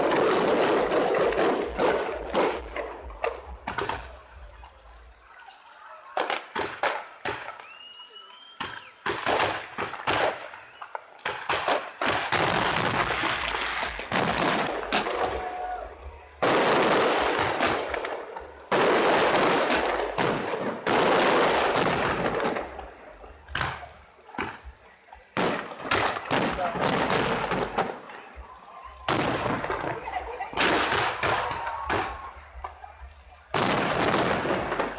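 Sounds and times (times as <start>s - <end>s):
firework bangs: 0.0s - 4.2s, 6.2s - 7.8s, 8.6s - 34.9s
fireworks crackling: 0.0s - 34.9s
rising firework whistle: 7.4s - 9.1s.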